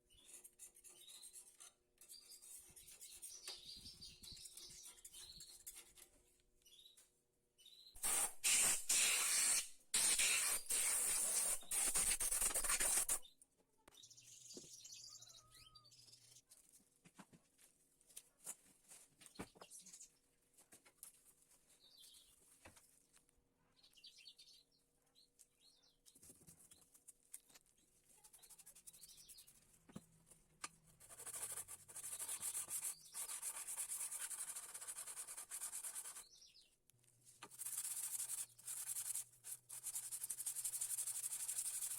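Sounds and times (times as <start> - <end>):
planer knife scraping on abrasive: 8.0 - 13.2.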